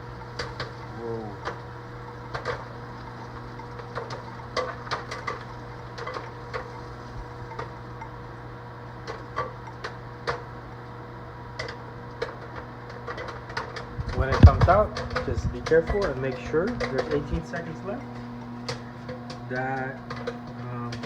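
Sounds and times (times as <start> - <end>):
popcorn kernels popping: 0.0 - 6.8, 9.0 - 10.6
microwave oven humming: 0.0 - 21.0.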